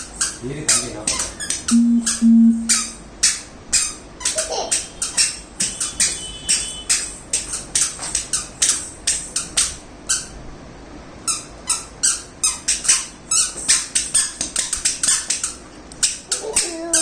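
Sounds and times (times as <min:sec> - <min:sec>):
person speaking: 0:01.7 - 0:02.7
squeaky shoes squeaking: 0:03.8 - 0:10.3, 0:11.3 - 0:15.7.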